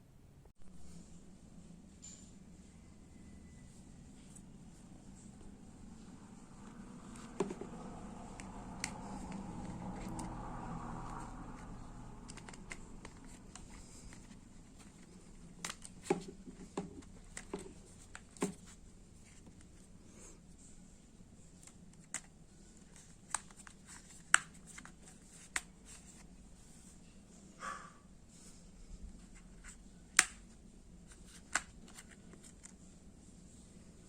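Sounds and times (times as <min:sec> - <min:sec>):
plastic parts clicking: 0:12.2 - 0:18.6.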